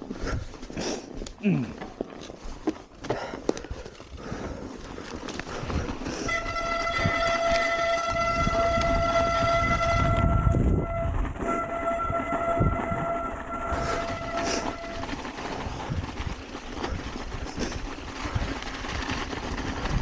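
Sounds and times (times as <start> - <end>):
bike brakes squealing: 11.4 - 15.1.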